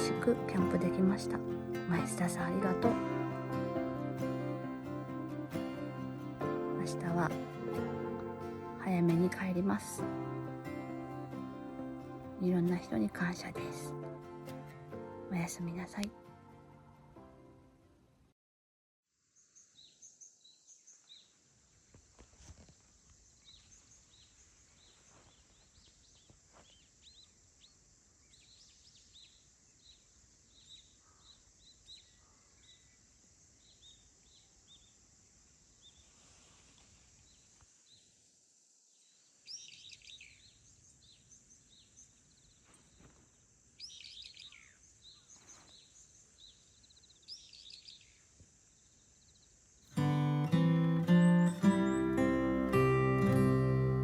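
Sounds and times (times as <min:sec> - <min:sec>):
faint birdsong chirps: 0:19.2 - 0:54.0.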